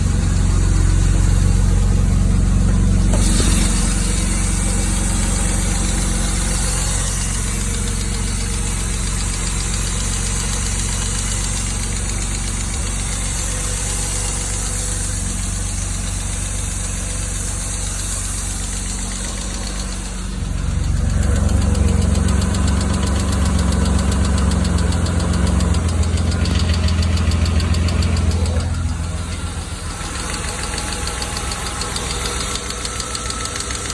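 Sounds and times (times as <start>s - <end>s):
car engine knocking and ticking: 0.0s - 33.9s.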